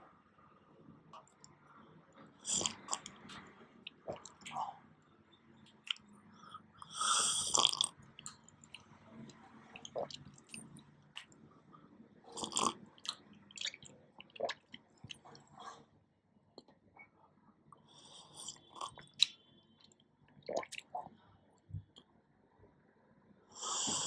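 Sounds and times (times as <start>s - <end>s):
person slurping a drink: 2.4s - 4.6s, 7.1s - 7.9s, 12.4s - 12.8s.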